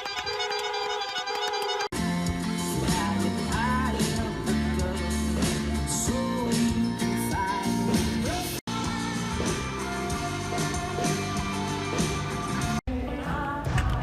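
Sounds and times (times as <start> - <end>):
guitar: 0.0 - 14.0
live pop-rock band playing: 2.0 - 12.8
person singing: 2.6 - 14.0.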